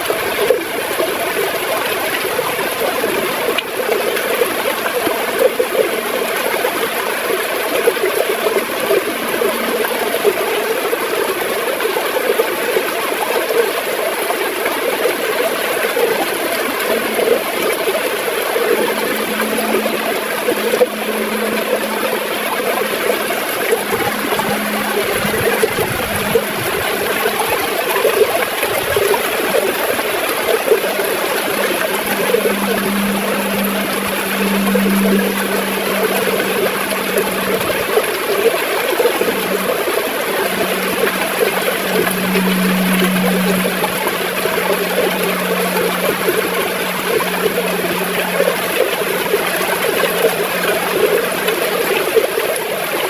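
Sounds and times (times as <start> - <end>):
river water gurgling over rocks: 0.0 - 53.0
faint low hum: 16.2 - 52.6.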